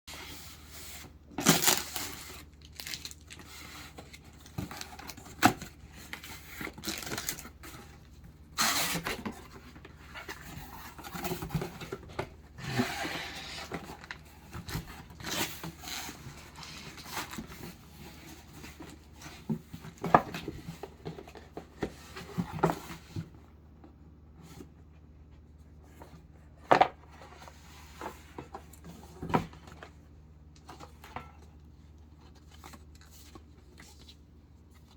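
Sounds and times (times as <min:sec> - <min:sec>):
paper and plastic crinkling: 0:00.1 - 0:23.0.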